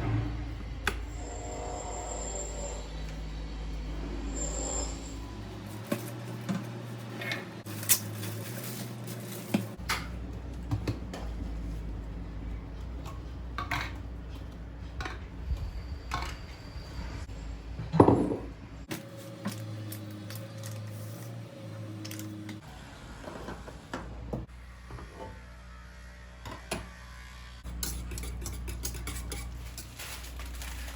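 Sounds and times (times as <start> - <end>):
dishes and utensils clinking: 27.7 - 30.9.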